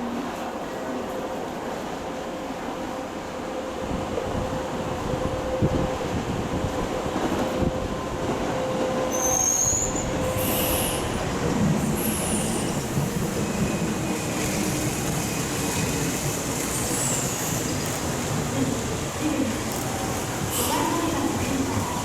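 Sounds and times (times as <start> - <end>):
train wheels rumbling on rail: 3.7 - 22.0
high-pitched wheel squeals: 9.1 - 11.1.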